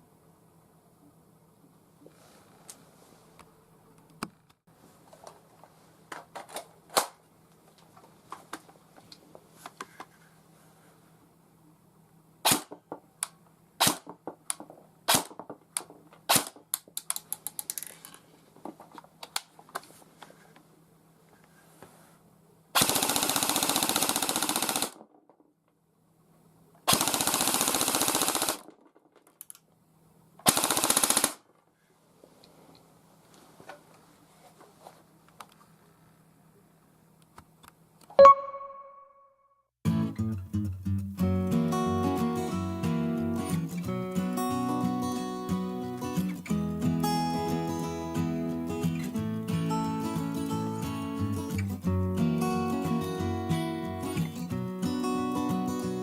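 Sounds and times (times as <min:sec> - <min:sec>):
airsoft gun firing bursts: 0:22.8 - 0:25.0, 0:26.9 - 0:28.7, 0:30.4 - 0:31.4.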